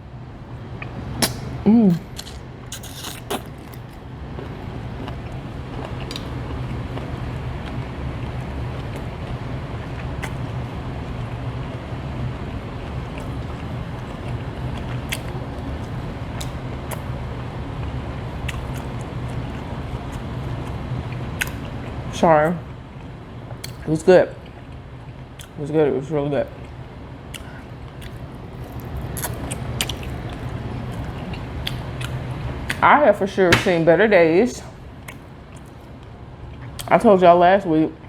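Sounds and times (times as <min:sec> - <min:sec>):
low background hum: 0:00.0 - 0:38.0
person chewing: 0:02.0 - 0:08.4, 0:21.4 - 0:21.8, 0:27.3 - 0:32.8.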